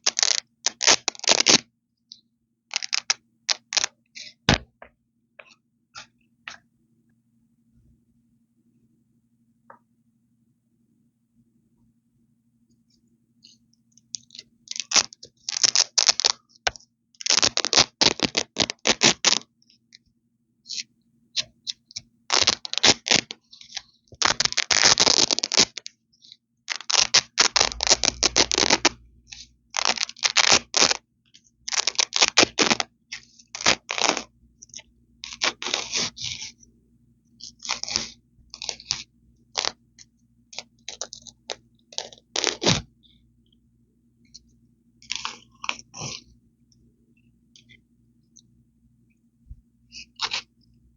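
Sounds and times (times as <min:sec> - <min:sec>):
velcro ripping apart: 0:00.0 - 0:01.6, 0:02.7 - 0:03.9, 0:14.7 - 0:16.4, 0:17.2 - 0:19.4, 0:22.3 - 0:25.8, 0:26.7 - 0:31.0, 0:31.7 - 0:34.3, 0:35.2 - 0:36.5, 0:37.4 - 0:39.0, 0:41.9 - 0:42.9, 0:50.2 - 0:50.5.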